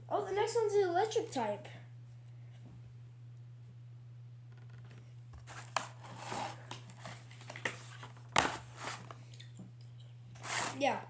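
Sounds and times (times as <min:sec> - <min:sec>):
steady low hum: 0:00.0 - 0:11.0
cards and packaging crinkling: 0:05.4 - 0:09.2.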